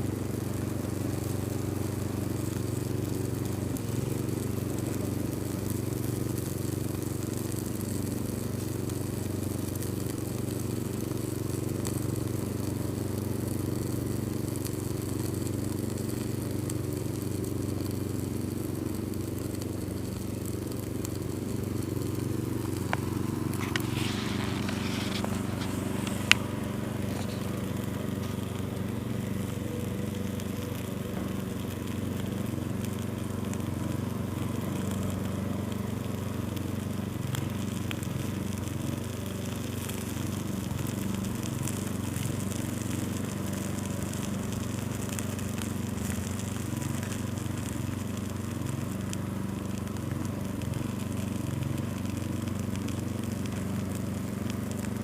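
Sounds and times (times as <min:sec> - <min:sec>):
steady low hum: 0:00.0 - 0:51.2
faint crackling: 0:00.0 - 0:55.0.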